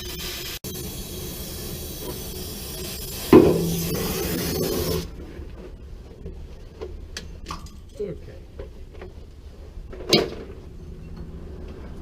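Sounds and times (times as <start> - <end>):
cutting torch hissing: 0.0 - 5.1
loud metallic clang: 3.3 - 4.1.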